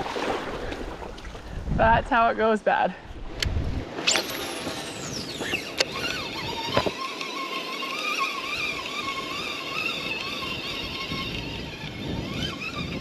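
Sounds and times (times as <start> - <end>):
fishing reel spool whine: 3.9 - 13.0.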